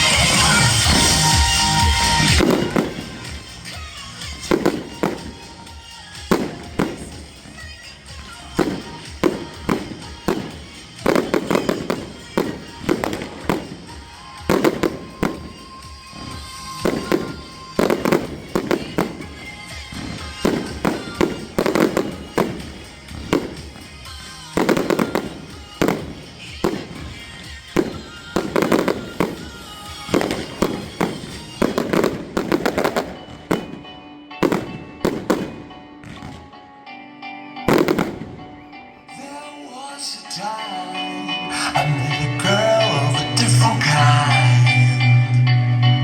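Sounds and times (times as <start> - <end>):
fireworks bursting: 0.0 - 36.6, 37.7 - 38.7
background music: 0.0 - 46.0.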